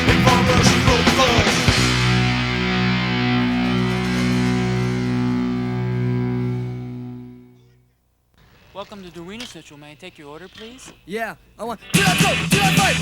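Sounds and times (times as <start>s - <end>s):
distorted electric guitar chord ringing: 0.0s - 7.9s.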